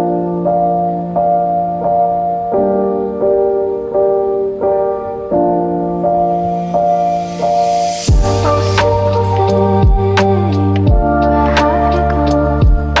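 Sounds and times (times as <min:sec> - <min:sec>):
gentle piano melody: 0:00.0 - 0:13.0
sustained low chords: 0:08.1 - 0:13.0.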